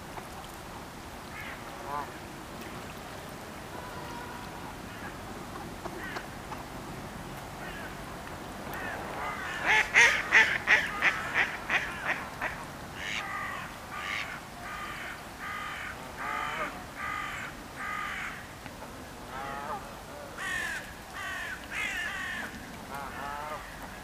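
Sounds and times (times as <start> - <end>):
crow cawing: 13.0 - 18.4, 20.4 - 22.5.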